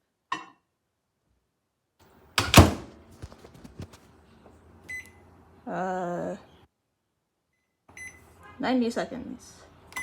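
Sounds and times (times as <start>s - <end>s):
microwave door shutting: 2.4s - 2.9s.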